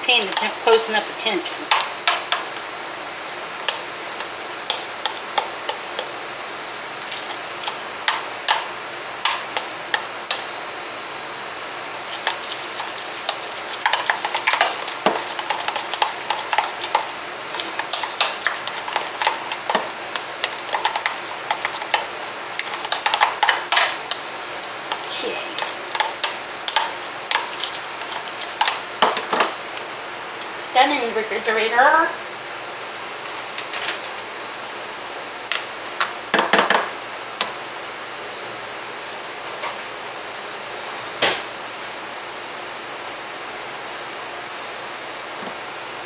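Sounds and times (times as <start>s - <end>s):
spoon stirring in a bowl: 0.0s - 2.7s, 3.6s - 6.2s, 7.0s - 10.4s, 11.9s - 31.5s.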